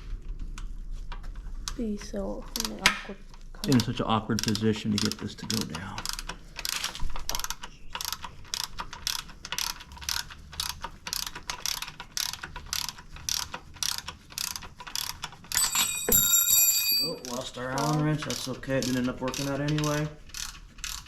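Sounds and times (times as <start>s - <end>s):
ratchet wrench clicking: 3.7s - 15.9s, 17.8s - 21.0s
dropped metal wrench ringing: 15.6s - 17.3s.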